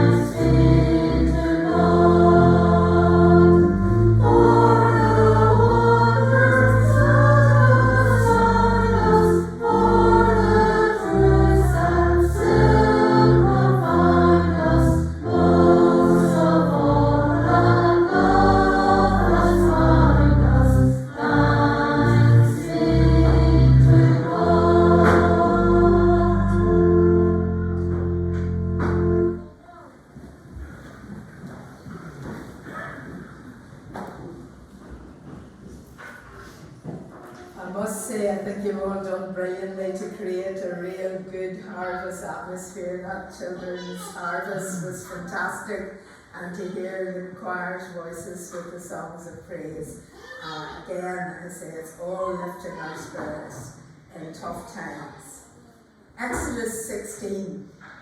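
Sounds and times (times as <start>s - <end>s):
church choir singing: 0.0s - 29.6s
sustained low accompanying notes: 0.0s - 29.6s.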